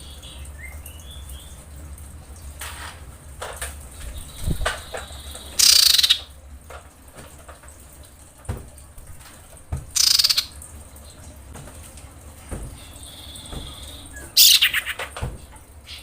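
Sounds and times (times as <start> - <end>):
bird giving harsh buzzy calls: 4.2 - 6.3, 10.0 - 10.6, 12.8 - 15.0.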